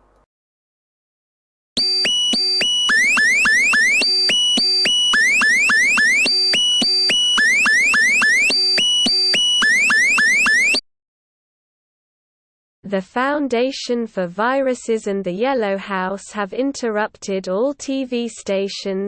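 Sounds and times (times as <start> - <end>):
emergency alert beeps and chirps: 1.8 - 10.8.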